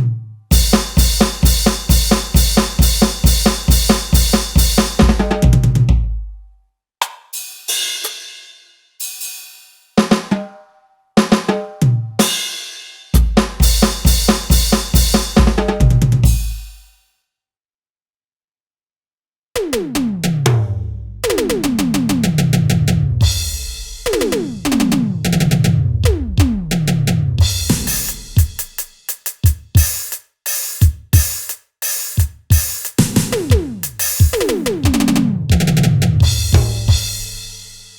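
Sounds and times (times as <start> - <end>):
kick and cymbal hits: 0.5 - 6.1, 12.2 - 16.9, 23.2 - 24.3, 26.4 - 35.0, 36.2 - 37.9
electronic tom fill: 0.5 - 6.3, 13.2 - 16.8, 19.7 - 30.1, 32.2 - 37.9
cymbal crashes: 27.5 - 29.0, 36.5 - 37.9
electronic cymbal crashes: 27.6 - 29.0.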